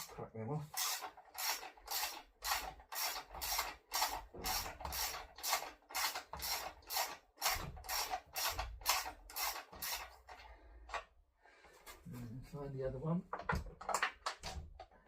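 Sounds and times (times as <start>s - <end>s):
ratchet wrench ratcheting: 0.7s - 10.4s.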